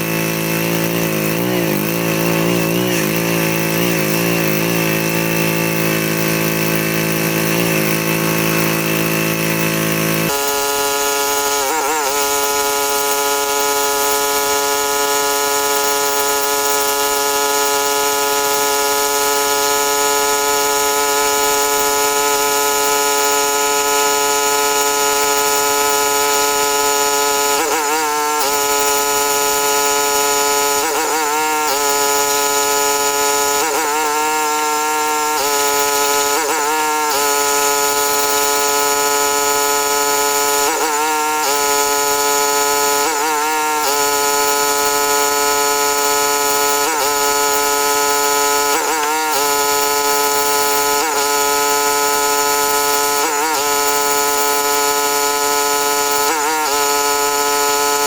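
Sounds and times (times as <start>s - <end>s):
pressure washer humming: 0.0s - 58.0s.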